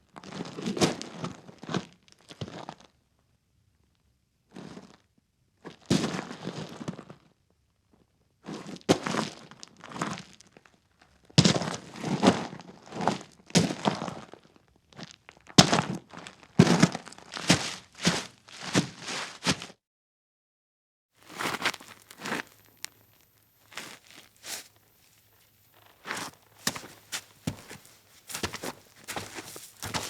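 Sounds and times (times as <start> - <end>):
boot footsteps scuffing: 21.2 - 30.0.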